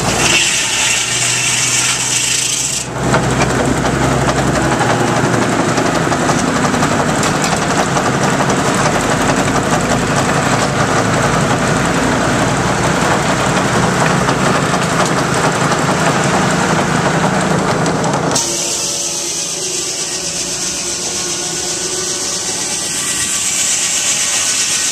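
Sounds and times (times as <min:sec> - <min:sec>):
sawmill blade cutting wood: 0:00.0 - 0:24.9
steam hissing: 0:18.4 - 0:24.9.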